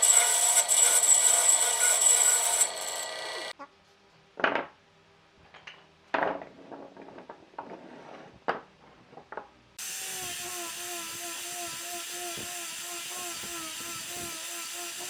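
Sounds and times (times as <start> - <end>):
steady hissing: 9.8 - 15.0.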